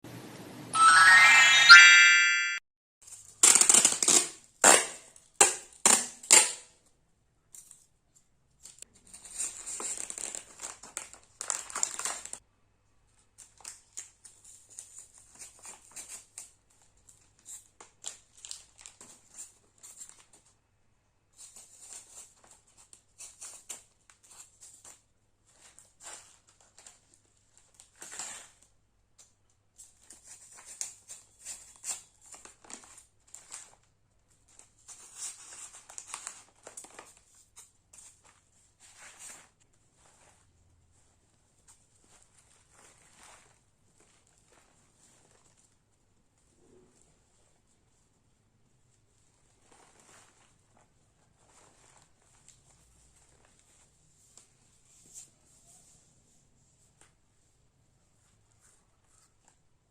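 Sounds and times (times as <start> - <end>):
plastic wrappers crinkling: 9.3 - 12.4, 16.8 - 20.4, 30.0 - 40.4.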